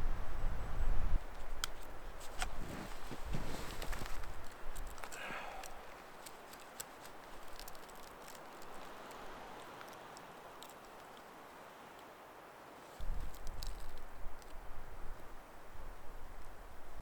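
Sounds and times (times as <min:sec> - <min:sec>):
faint ambient hiss: 0:00.0 - 0:17.0
small sharp ticks and clicks: 0:01.2 - 0:12.2, 0:12.8 - 0:14.6.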